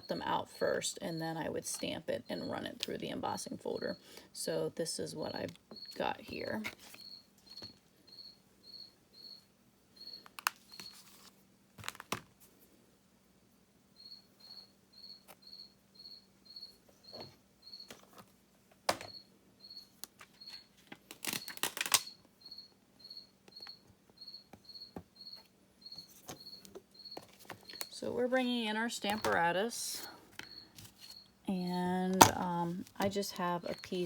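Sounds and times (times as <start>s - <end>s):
cricket chirping: 7.0s - 10.2s, 14.0s - 17.9s, 19.1s - 20.6s, 22.1s - 28.0s, 30.0s - 31.3s.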